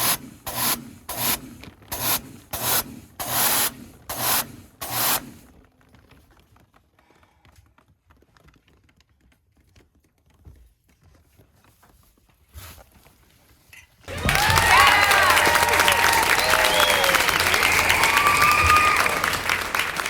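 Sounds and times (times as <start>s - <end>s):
rapid rubbing strokes: 0.0s - 5.4s.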